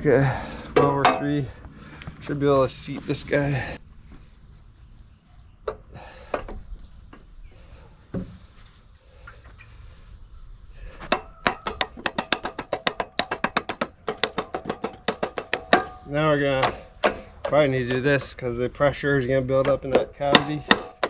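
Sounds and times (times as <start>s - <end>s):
scattered knocks: 11.1s - 18.3s, 19.6s - 21.0s
rapid light tapping: 11.1s - 18.4s.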